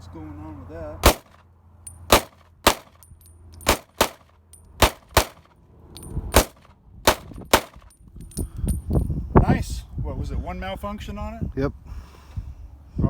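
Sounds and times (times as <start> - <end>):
pistol shots: 1.0 - 1.4, 2.1 - 3.0, 3.6 - 4.2, 4.8 - 5.5, 6.3 - 7.9.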